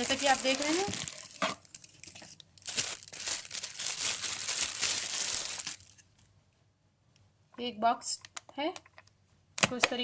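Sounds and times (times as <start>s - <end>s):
packaging crinkling and rustling: 0.0s - 6.2s.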